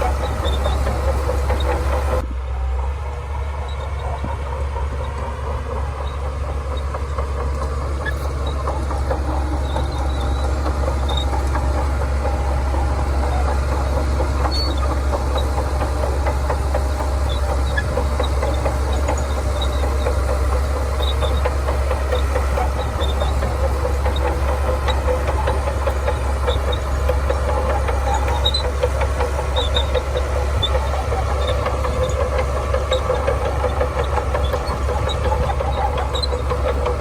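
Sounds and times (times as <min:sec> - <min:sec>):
bulldozer diesel engine running: 0:00.0 - 0:37.0
steel tracks clattering: 0:00.0 - 0:37.0.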